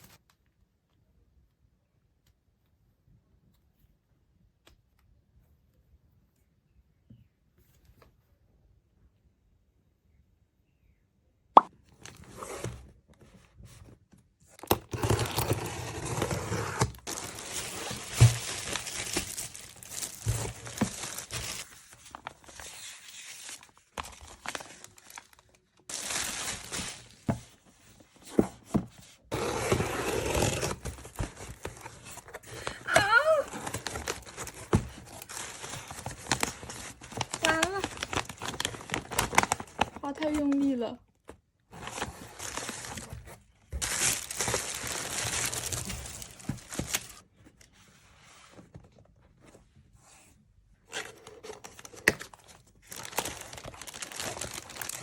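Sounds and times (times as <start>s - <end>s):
packaging rustling and tearing: 14.6s - 28.2s, 29.3s - 40.6s, 41.8s - 47.2s, 50.9s - 55.0s.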